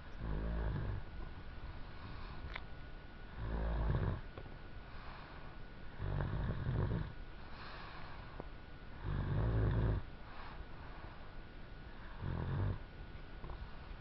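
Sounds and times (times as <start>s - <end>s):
child snoring: 0.2s - 1.0s, 3.4s - 4.2s, 6.0s - 8.1s, 9.0s - 10.1s, 12.0s - 12.8s.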